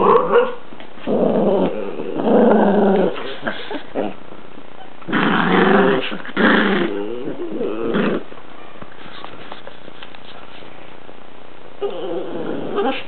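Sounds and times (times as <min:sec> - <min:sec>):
dog growling: 0:00.0 - 0:04.2, 0:05.1 - 0:08.3, 0:11.8 - 0:13.0.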